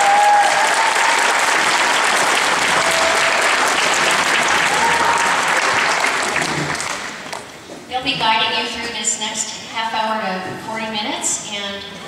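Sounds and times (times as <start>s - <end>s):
audience applauding: 0.0s - 7.5s.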